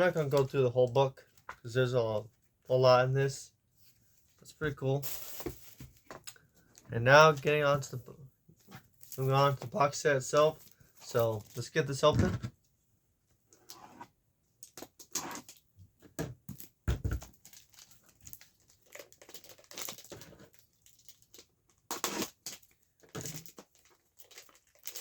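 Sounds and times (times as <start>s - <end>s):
plastic shrink wrap tearing: 17.2s - 25.0s.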